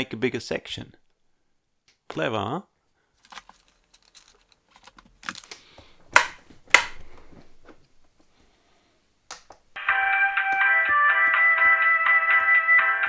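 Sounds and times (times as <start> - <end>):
plastic sheet crackling: 3.2 - 7.0
guitar music: 9.8 - 13.0.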